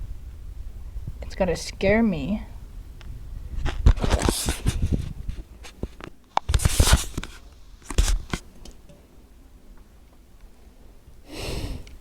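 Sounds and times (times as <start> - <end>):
close rustling and scraping: 3.5 - 8.9.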